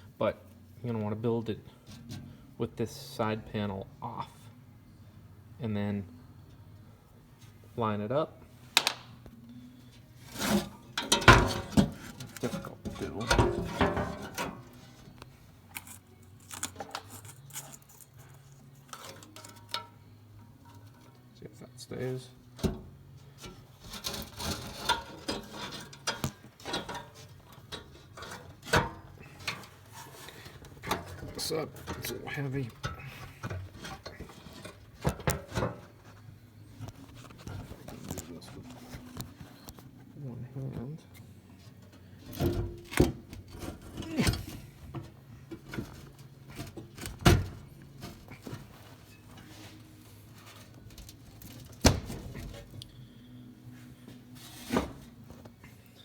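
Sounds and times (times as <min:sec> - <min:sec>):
metallic clicks and clanks of parts: 0:10.3 - 0:21.2, 0:22.6 - 0:36.1, 0:41.1 - 0:53.0
metal parts knocking and clanking: 0:11.0 - 0:14.8, 0:23.4 - 0:35.9.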